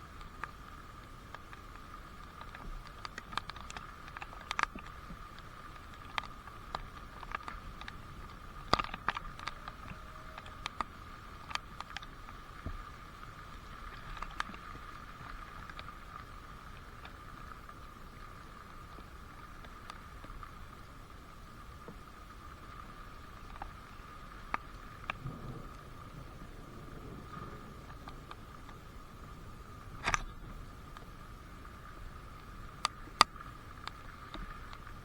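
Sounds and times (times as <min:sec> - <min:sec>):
faint hiss: 0:00.0 - 0:35.0
water dripping: 0:00.1 - 0:17.2.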